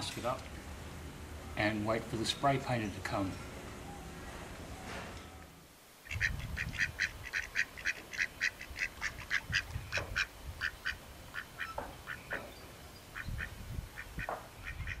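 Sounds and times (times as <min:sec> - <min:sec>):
ducks quacking: 0:06.0 - 0:12.5, 0:13.2 - 0:15.0.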